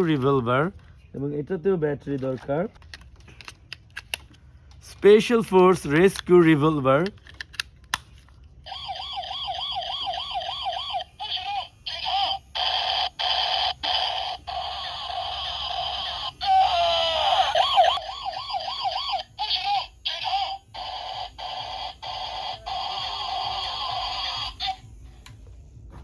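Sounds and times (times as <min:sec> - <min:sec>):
toy gun warbling siren tone: 0:08.6 - 0:25.1.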